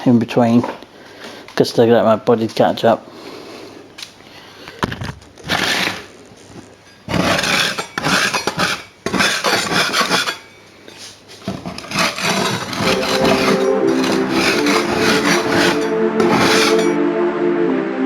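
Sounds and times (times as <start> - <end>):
objects clattering and knocking: 4.8 - 10.6, 11.3 - 17.0.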